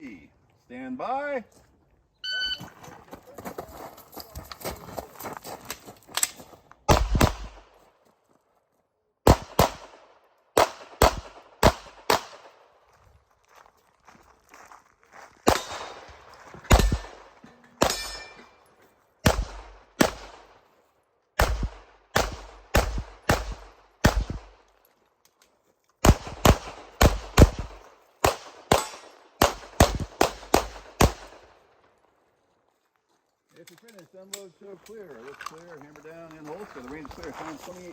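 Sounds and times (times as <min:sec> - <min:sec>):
pistol shots: 0:06.9 - 0:07.8, 0:09.2 - 0:12.7, 0:15.4 - 0:18.4, 0:19.2 - 0:20.6, 0:21.4 - 0:24.7, 0:26.0 - 0:31.6.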